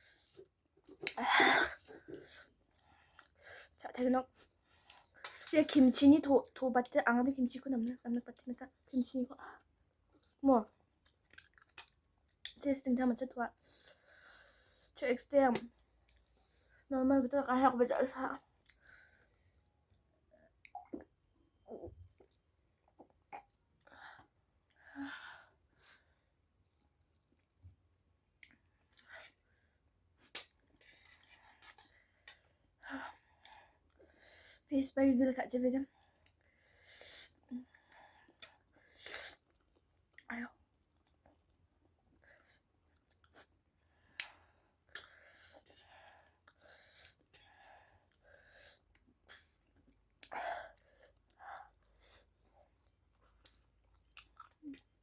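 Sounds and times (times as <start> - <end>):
person chewing noodles: 9.6 - 12.6, 18.5 - 24.8, 25.7 - 34.1, 37.3 - 40.3, 40.9 - 55.0
person chewing: 11.0 - 12.6, 52.4 - 55.0.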